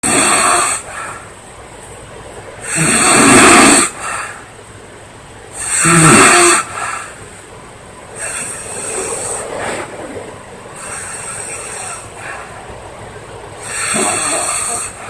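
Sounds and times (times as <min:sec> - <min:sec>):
quiet breathing: 0:00.4 - 0:02.8, 0:03.8 - 0:05.8, 0:06.7 - 0:15.0
woman snoring loudly: 0:05.7 - 0:06.7.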